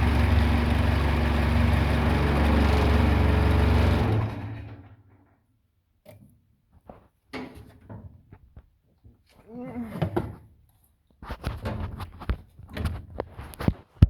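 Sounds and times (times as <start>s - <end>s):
diesel engine running and winding down: 0.0s - 4.9s.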